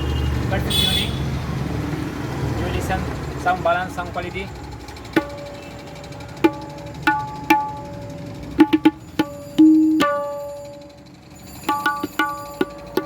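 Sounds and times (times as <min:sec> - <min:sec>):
tabla strokes ringing: 0:04.7 - 0:13.0.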